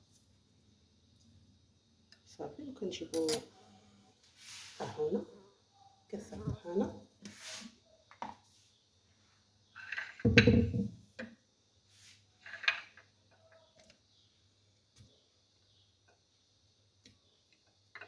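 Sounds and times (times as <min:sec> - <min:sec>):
blender jar knocking and clatter: 0:10.3 - 0:11.0.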